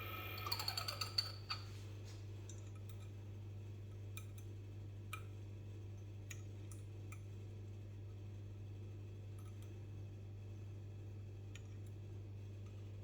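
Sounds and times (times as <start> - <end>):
steady low hum: 0.0 - 1.1.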